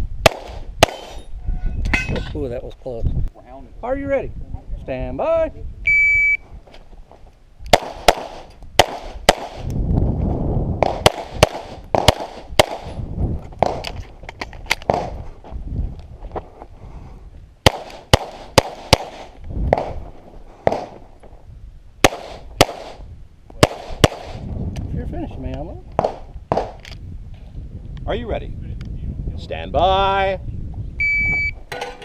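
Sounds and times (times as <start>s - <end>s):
pistol shots: 0.2s - 1.2s, 7.7s - 9.7s, 10.8s - 12.9s, 17.6s - 20.0s, 22.0s - 23.0s, 23.6s - 24.4s, 26.0s - 26.8s.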